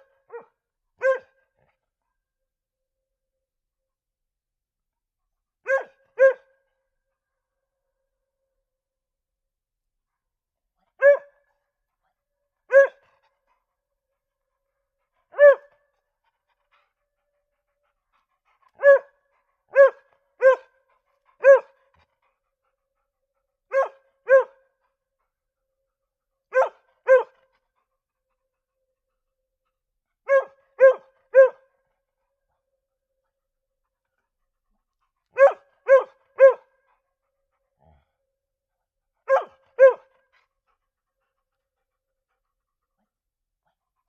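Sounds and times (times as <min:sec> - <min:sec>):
dog barking: 0:00.0 - 0:01.4, 0:05.6 - 0:06.6, 0:11.0 - 0:11.5, 0:12.7 - 0:13.2, 0:15.3 - 0:15.9, 0:18.7 - 0:20.8, 0:21.4 - 0:21.8, 0:23.7 - 0:24.7, 0:26.5 - 0:27.4, 0:30.3 - 0:31.7, 0:35.4 - 0:36.8, 0:39.2 - 0:40.2.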